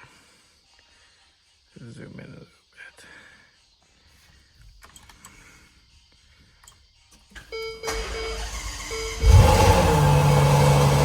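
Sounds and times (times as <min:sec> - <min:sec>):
ignition beeping and whirring: 0:07.3 - 0:11.0
car engine starting and idling: 0:07.6 - 0:11.0.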